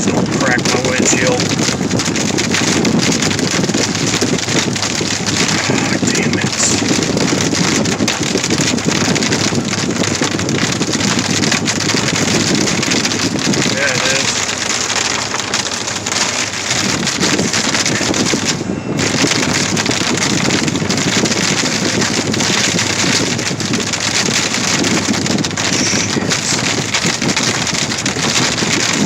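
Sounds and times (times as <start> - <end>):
hail and rain on car roof: 0.0 - 29.0.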